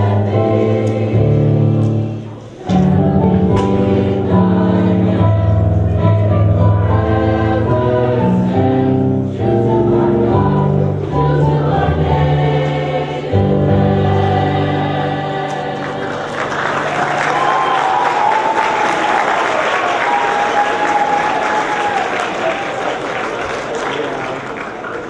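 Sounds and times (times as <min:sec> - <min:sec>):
choir singing: 0:00.0 - 0:19.4
applause: 0:15.9 - 0:25.0.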